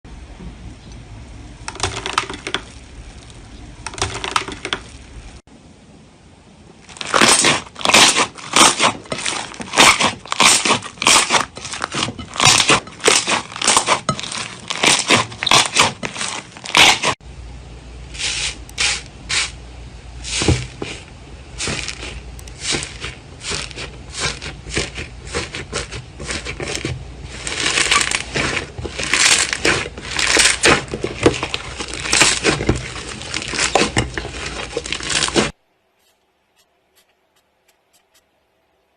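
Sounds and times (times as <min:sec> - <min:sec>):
slime crackling and popping: 0:06.8 - 0:17.2, 0:21.6 - 0:35.6.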